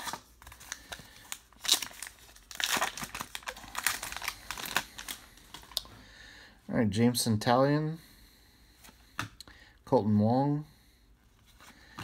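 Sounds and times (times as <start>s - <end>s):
foil wrapper tearing and crinkling: 0.0s - 5.8s.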